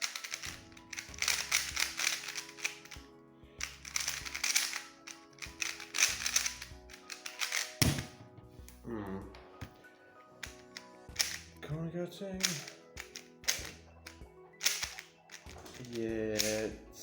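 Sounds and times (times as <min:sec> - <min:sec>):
plastic puzzle cube clicking: 0:00.0 - 0:03.0, 0:03.6 - 0:08.0, 0:10.4 - 0:11.5, 0:12.4 - 0:16.7
background music: 0:00.0 - 0:17.0.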